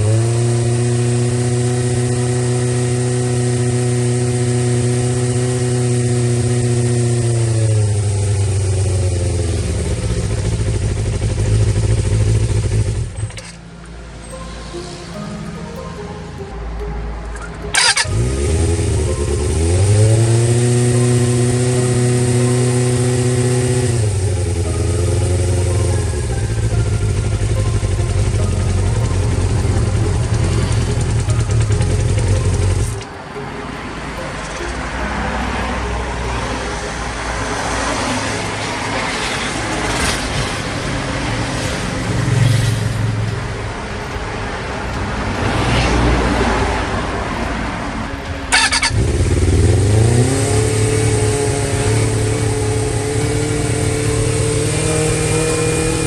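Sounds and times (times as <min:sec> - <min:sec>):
motorcycle engine revving: 0:00.0 - 0:13.6, 0:17.7 - 0:33.0, 0:48.5 - 0:56.0
rougher noisier engine: 0:00.0 - 0:56.0.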